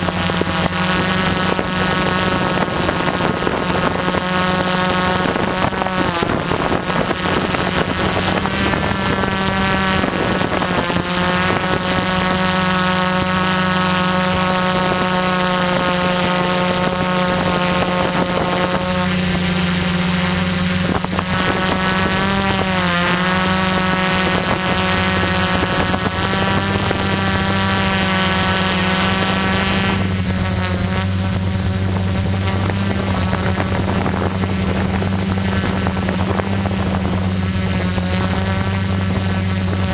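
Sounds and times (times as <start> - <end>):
drone motors buzzing: 0.0 - 39.9
high motor whine shifting pitch: 0.0 - 39.9.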